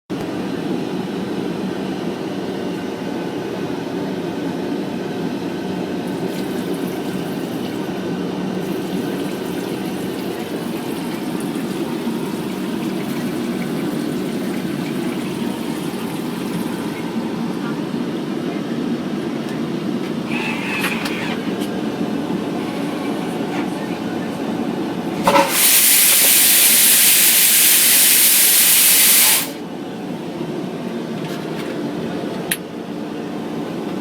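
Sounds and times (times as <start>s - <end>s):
airliner cabin drone: 0.2s - 26.0s.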